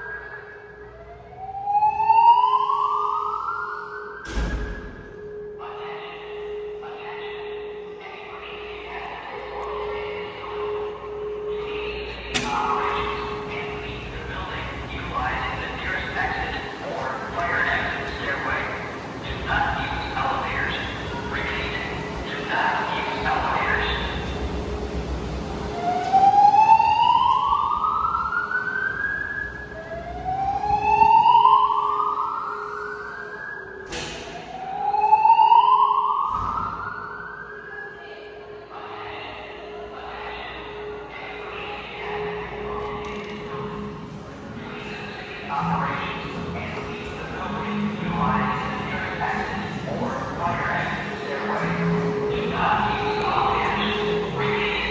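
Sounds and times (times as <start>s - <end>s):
voice evacuation messages: 5.4s - 36.5s, 37.8s - 54.9s
steady alarm tone: 10.6s - 37.7s
noisy alarm bursts: 11.2s - 38.0s.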